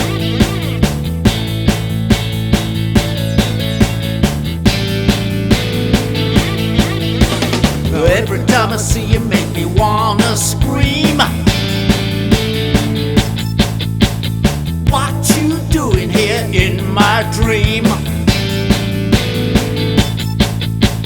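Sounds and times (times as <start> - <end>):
lead guitar notes: 0.0 - 13.4
bass and guitar notes: 0.0 - 21.0
drum beat: 0.0 - 21.0.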